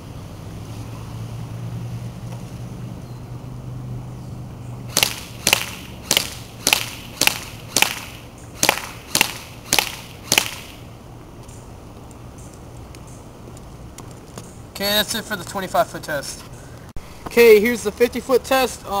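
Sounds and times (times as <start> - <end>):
airsoft gun shots cracking: 4.9 - 10.9.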